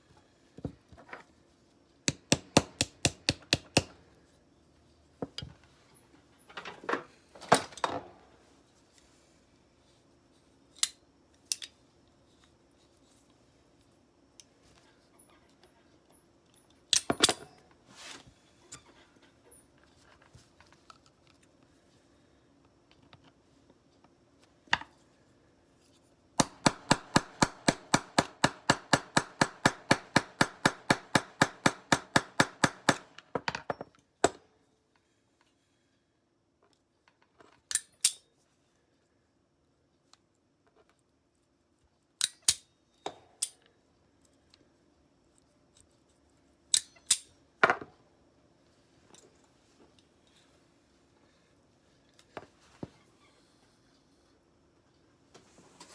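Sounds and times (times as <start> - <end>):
small hammer tapping metal: 2.1 - 4.0, 26.4 - 33.8.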